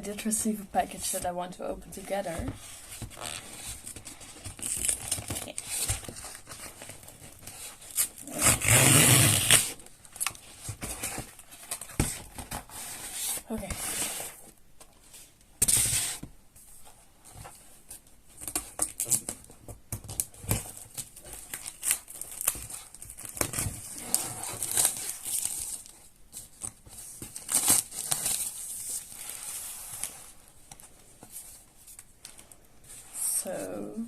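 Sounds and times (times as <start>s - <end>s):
paper and plastic crinkling: 0.1s - 8.5s, 16.1s - 33.3s
packaging being cut and torn: 4.5s - 11.8s, 20.0s - 25.9s.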